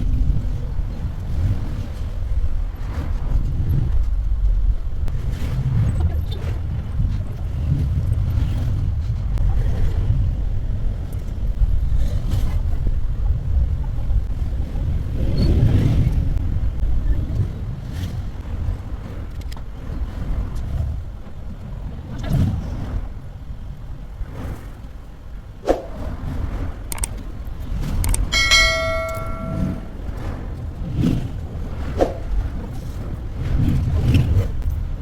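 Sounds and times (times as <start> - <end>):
bell-like metallic ring: 28.3 - 30.0
knocks: 28.4 - 29.9.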